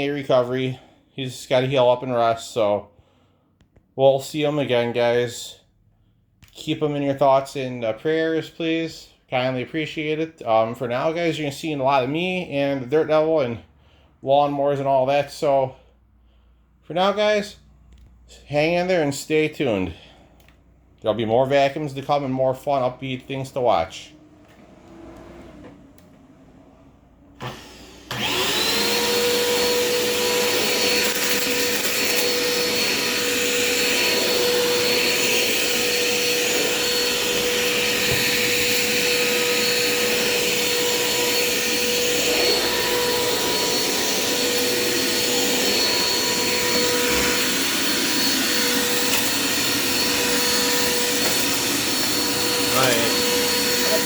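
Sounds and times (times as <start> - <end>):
vacuum cleaner motor whine: 24.2 - 54.0.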